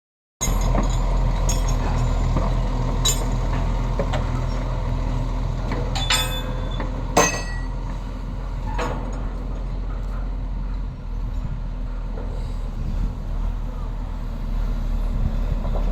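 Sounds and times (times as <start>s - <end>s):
crane diesel engine running: 0.4s - 15.9s
sharp metal clanks: 5.9s - 7.8s.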